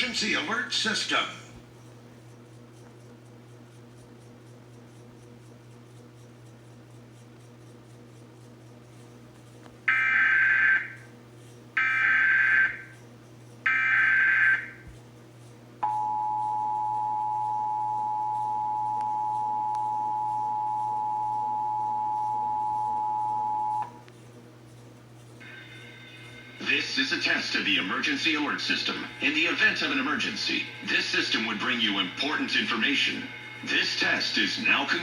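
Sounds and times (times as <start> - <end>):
two-tone attention signal: 15.8 - 23.9
digital data tone bursts: 25.4 - 35.0.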